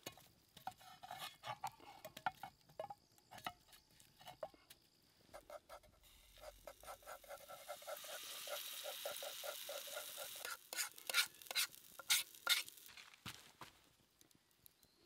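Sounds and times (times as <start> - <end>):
sharp scrapes and knocks: 0.0 - 4.6, 5.4 - 13.4
steady hiss: 5.1 - 15.0
utensil whisking in a pot: 6.4 - 12.8.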